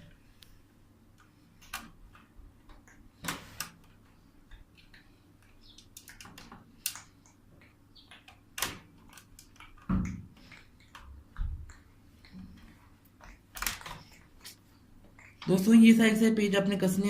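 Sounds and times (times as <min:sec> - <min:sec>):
computer hardware clicks and taps: 0:01.1 - 0:14.2.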